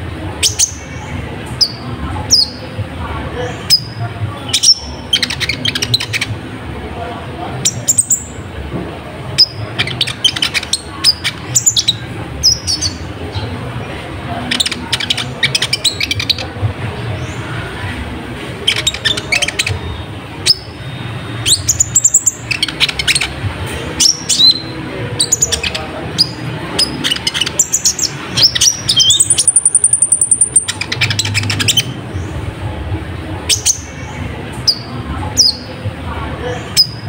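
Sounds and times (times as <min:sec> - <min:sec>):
bird chirping and whistling: 0:03.6 - 0:06.3, 0:09.4 - 0:13.0, 0:18.6 - 0:23.4, 0:24.0 - 0:32.0, 0:33.5 - 0:33.9, 0:36.7 - 0:37.0.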